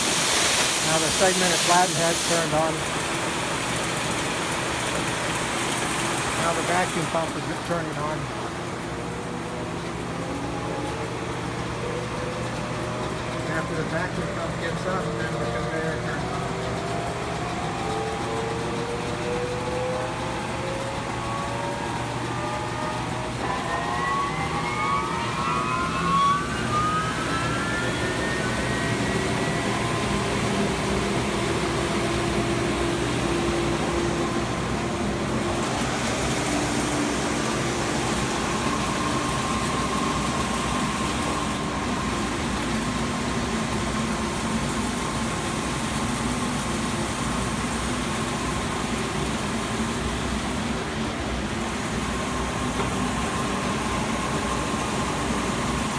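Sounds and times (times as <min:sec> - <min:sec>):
belt sander motor whine and hum: 0:01.0 - 0:47.8.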